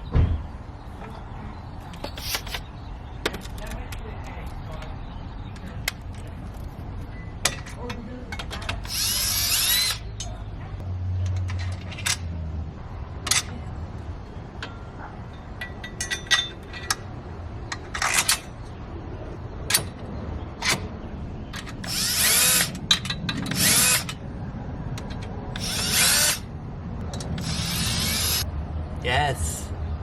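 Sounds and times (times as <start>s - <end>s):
tool whirring or ratcheting: 8.7s - 10.1s, 21.5s - 24.2s, 25.0s - 26.5s, 27.1s - 28.5s
sharp metal clicks: 24.9s - 28.5s.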